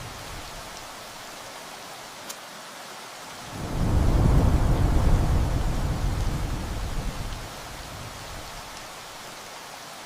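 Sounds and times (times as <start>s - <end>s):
heavy rain: 0.0s - 10.0s
thunder rumbling: 3.5s - 8.9s.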